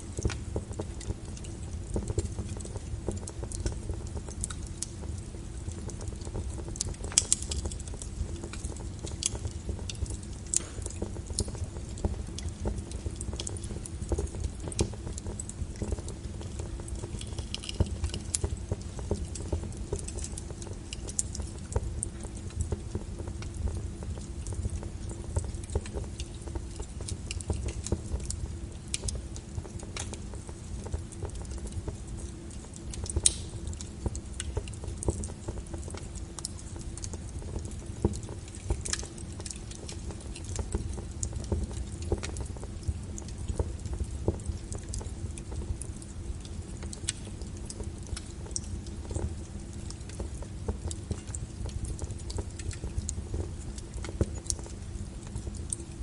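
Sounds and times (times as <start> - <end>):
low rumble of flames: 0.0 - 56.0
wood fire crackling: 0.0 - 56.0
loud fire pops: 8.4 - 11.9, 33.0 - 35.7.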